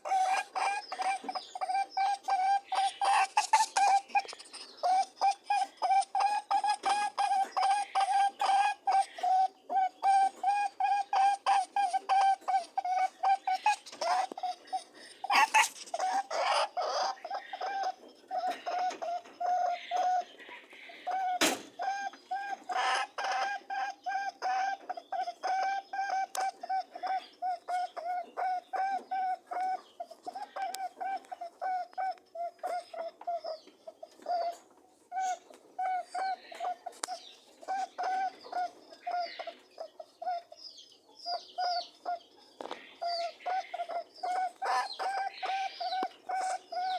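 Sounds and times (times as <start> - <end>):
rabbit honking: 0.0 - 20.3.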